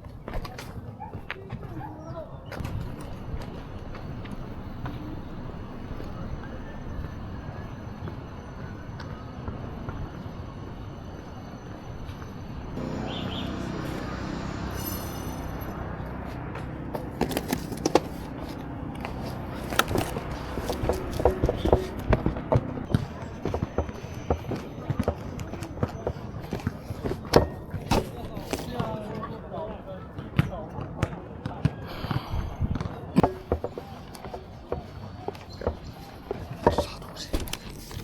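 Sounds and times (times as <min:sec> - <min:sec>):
low street noise rumble: 0:00.0 - 0:38.0
engine-like hum: 0:02.6 - 0:28.7, 0:32.0 - 0:38.0
sharp clicks and knocks rattling: 0:33.2 - 0:38.0.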